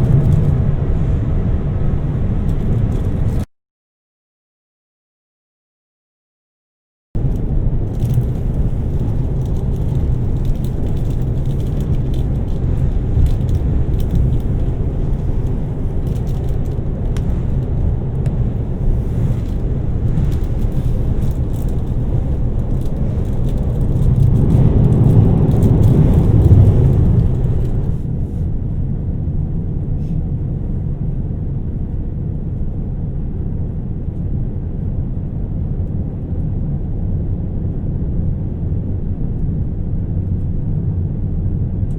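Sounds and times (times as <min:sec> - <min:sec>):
train rumbling on rails: 0:00.0 - 0:03.5, 0:07.2 - 0:31.8
light crackling: 0:07.2 - 0:28.1.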